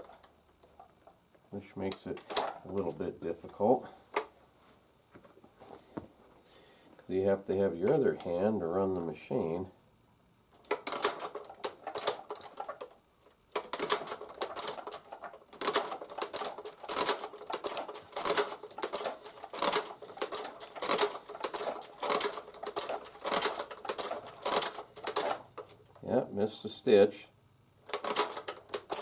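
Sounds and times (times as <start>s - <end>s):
sewing machine clacking: 10.6s - 25.8s, 27.9s - 29.0s.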